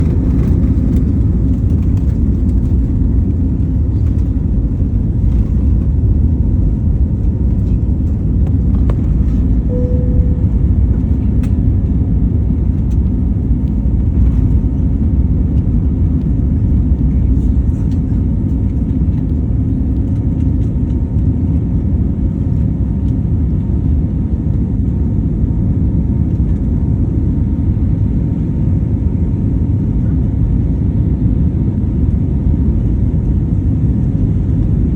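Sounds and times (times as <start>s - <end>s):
airplane engine rumble: 0.0s - 34.9s
short tone: 9.6s - 11.6s.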